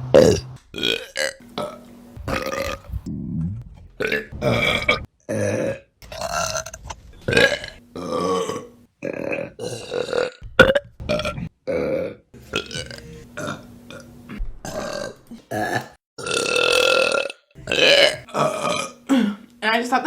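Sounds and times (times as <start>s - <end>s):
woman burping: 0.1s - 2.8s, 7.4s - 13.6s, 14.7s - 19.4s.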